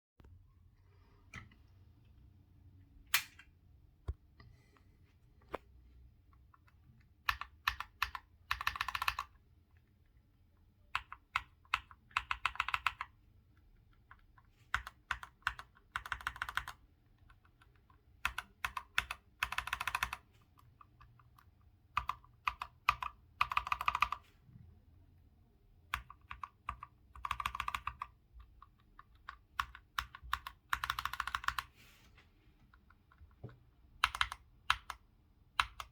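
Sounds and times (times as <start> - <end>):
mechanical keyboard keystrokes: 6.6 - 9.4, 10.9 - 13.1, 14.7 - 24.2, 25.9 - 31.7, 34.0 - 35.9.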